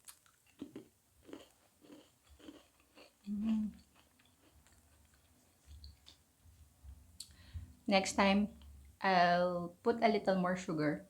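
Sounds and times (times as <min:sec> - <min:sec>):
chewing crisp cookie: 0:00.0 - 0:06.3
person humming: 0:03.3 - 0:03.8.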